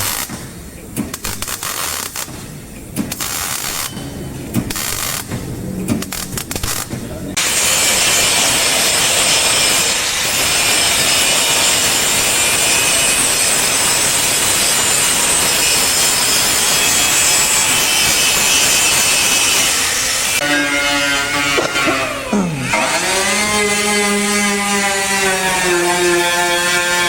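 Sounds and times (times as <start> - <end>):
power sander on metal panel: 0.0 - 0.5, 1.1 - 2.4, 3.1 - 4.0, 4.6 - 12.2.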